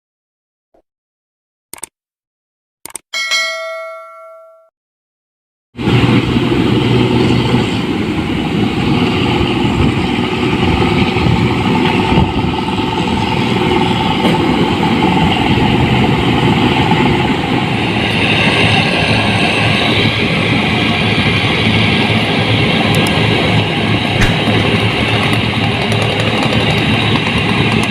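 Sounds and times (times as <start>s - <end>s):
combine harvester engine running: 20.2s - 27.9s.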